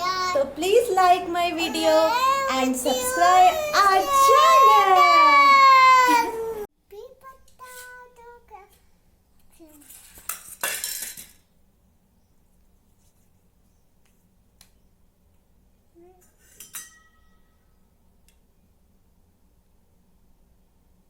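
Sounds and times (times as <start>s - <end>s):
kitchenware clinking and clattering: 16.3s - 17.3s.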